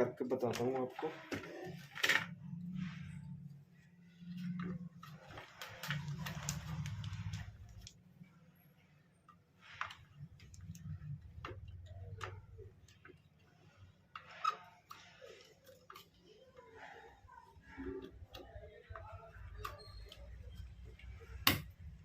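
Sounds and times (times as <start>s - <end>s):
plastic rustling: 0.1s - 8.1s.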